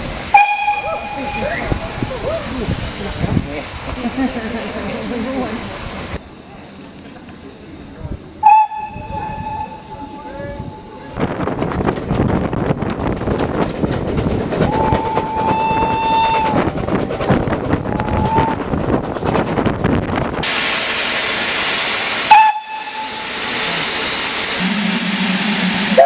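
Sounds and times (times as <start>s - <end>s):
loud steam hiss: 0.0s - 11.2s, 20.4s - 26.0s
moving train running noise: 0.0s - 26.0s
steam locomotive whistle: 0.3s - 2.0s, 8.4s - 10.9s, 14.7s - 16.6s, 22.2s - 23.6s, 24.6s - 26.0s.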